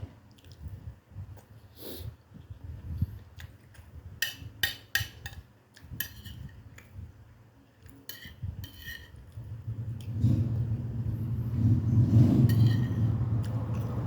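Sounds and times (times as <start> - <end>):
faint chewing: 0.3 - 1.6
cutlery clinking on plates: 8.1 - 9.2, 12.5 - 13.1.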